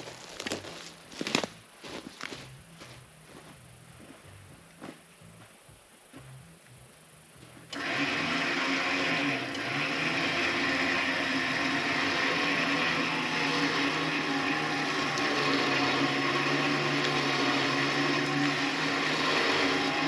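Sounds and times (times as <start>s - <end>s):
electric motor running: 7.7s - 20.0s.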